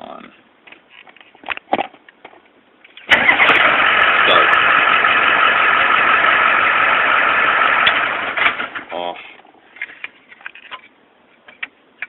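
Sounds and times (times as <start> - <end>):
diesel engine starting: 3.0 - 8.9.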